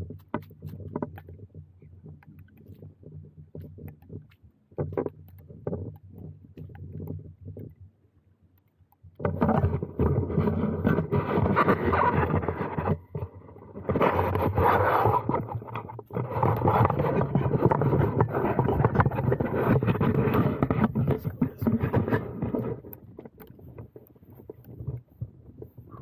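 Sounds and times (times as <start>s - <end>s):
wind and handling noise on microphone: 0.0s - 26.0s.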